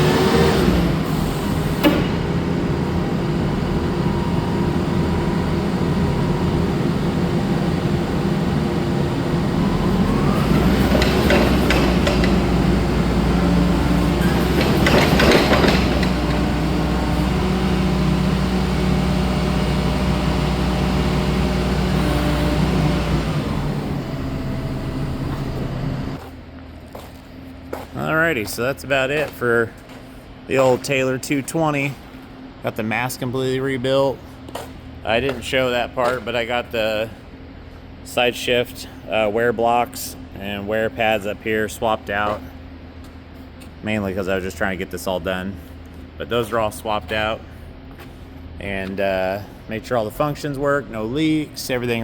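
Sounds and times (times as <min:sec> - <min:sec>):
forklift engine running: 0:00.0 - 0:26.6.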